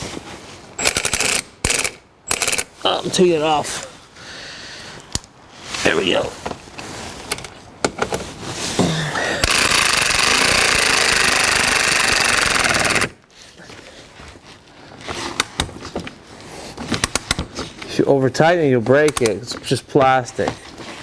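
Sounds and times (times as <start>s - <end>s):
impact driver hammering rattle: 9.4s - 13.2s, 18.9s - 19.4s
handling clicks and knocks: 16.8s - 17.9s, 18.8s - 20.8s.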